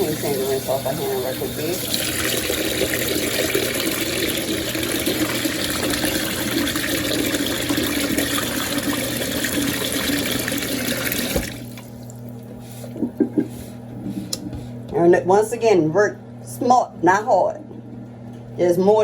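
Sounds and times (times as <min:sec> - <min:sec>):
tap water splashing into sink: 0:01.8 - 0:12.2.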